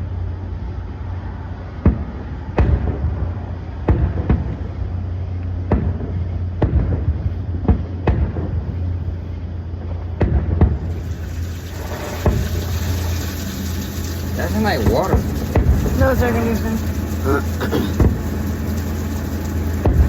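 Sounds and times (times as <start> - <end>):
fireworks bangs: 9.9 - 17.1, 19.5 - 20.0
air conditioner humming: 10.7 - 20.0.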